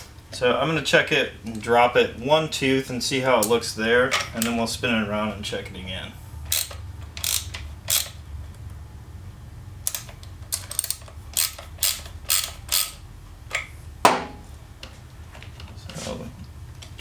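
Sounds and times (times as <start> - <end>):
ratcheting clicks: 6.5 - 8.7, 9.8 - 13.6.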